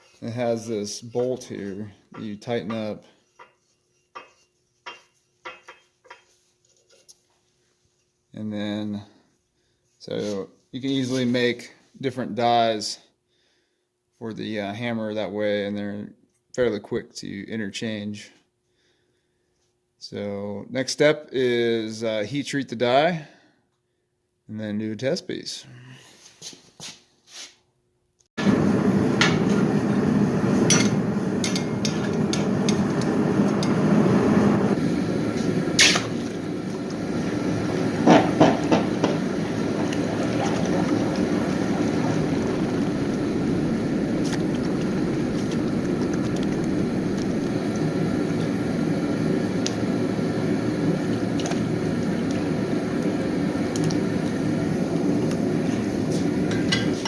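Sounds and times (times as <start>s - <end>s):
rushing bubbling quench: 33.2s - 52.5s.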